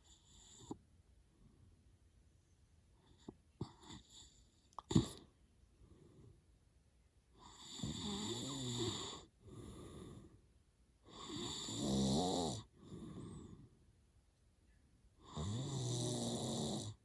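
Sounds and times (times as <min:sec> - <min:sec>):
man snoring heavily: 0:07.6 - 0:10.1, 0:11.1 - 0:13.1, 0:15.3 - 0:17.0.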